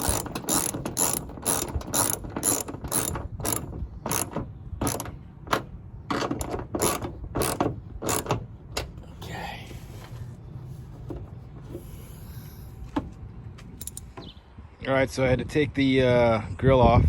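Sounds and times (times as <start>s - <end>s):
ratchet wrench clicking: 0.0s - 8.4s, 13.8s - 14.2s.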